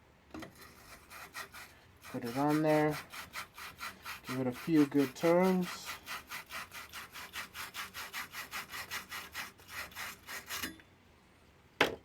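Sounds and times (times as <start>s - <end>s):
wire brush scrubbing copper pipe: 0.6s - 10.7s.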